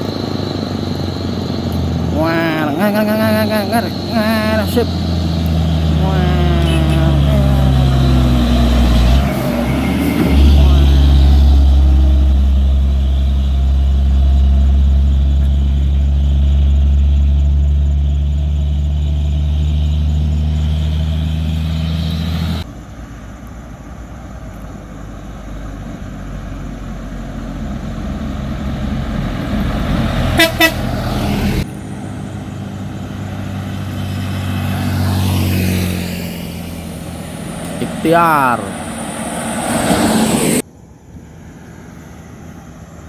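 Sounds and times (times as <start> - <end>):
truck diesel engine running: 0.0 - 40.6
road noise: 0.0 - 43.0
short horn toots: 30.3 - 31.4.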